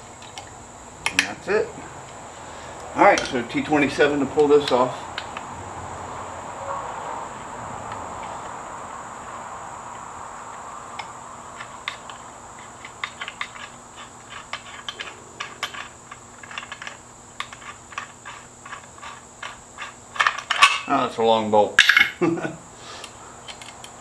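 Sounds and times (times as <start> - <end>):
faint steady hiss: 0.0 - 24.0
hand ratchet clicking: 0.2 - 2.2, 10.9 - 20.9.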